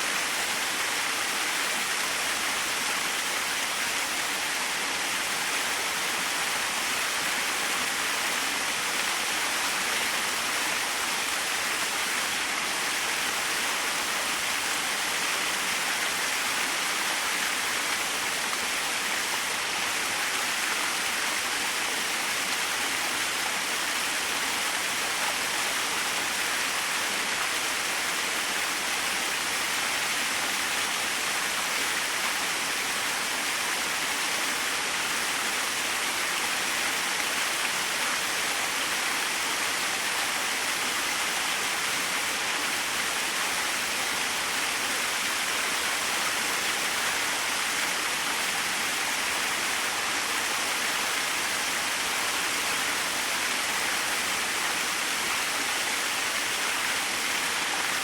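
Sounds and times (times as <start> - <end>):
small waterfall splashing: 0.0 - 58.0.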